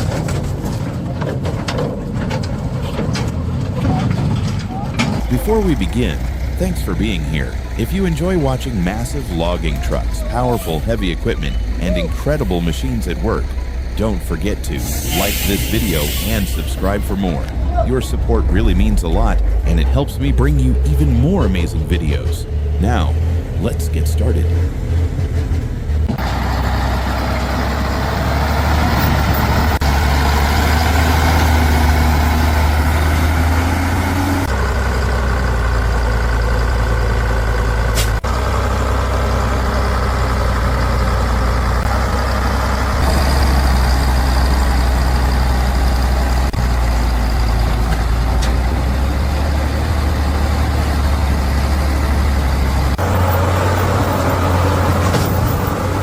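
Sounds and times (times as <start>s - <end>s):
truck engine running under load: 0.0s - 56.0s.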